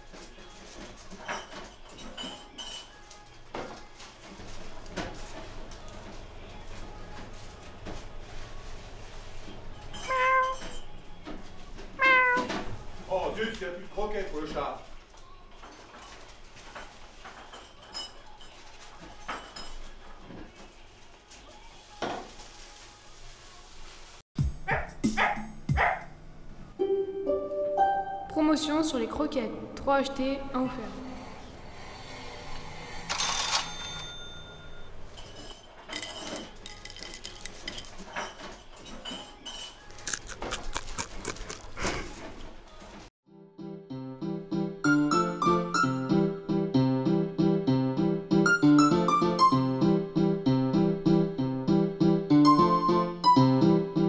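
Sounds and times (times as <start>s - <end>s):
dishes and cutlery clinking: 0.1s - 5.2s, 9.7s - 12.7s, 15.6s - 20.6s, 33.9s - 42.0s
cash register bell ring: 33.1s - 36.4s
small hard objects clinking: 35.9s - 38.2s, 39.9s - 41.8s.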